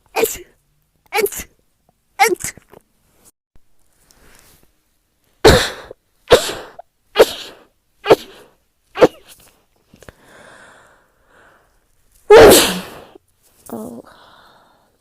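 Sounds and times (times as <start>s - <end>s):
woman sneezing: 0.2s - 0.5s, 1.2s - 1.5s, 2.2s - 2.6s, 5.4s - 9.4s, 12.3s - 13.2s.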